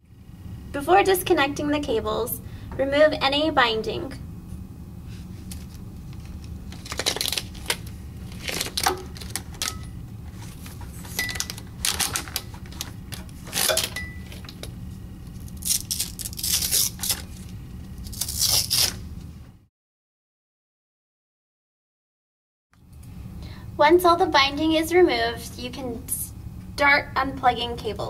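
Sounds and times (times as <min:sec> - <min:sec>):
steady low hum: 0:00.0 - 0:19.7, 0:22.8 - 0:28.0
cables being handled: 0:05.1 - 0:19.0.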